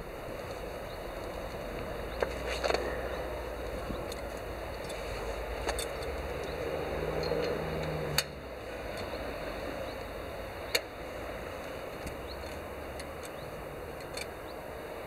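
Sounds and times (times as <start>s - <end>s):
steady background hiss: 0.0s - 15.0s
metallic clicks of hand tools: 5.6s - 9.2s, 12.1s - 14.4s.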